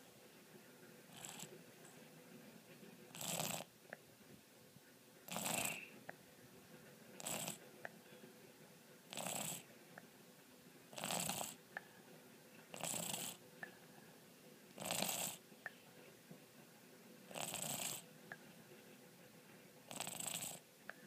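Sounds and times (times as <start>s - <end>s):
person snoring: 5.3s - 5.9s, 11.0s - 11.6s, 14.8s - 15.4s.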